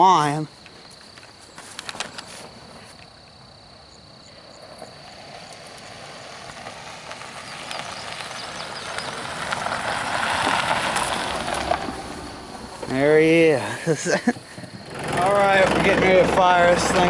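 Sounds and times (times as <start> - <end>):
vehicle approaching fast: 4.4 - 17.0
vehicle rattles and knocks: 4.7 - 13.4, 14.2 - 17.0.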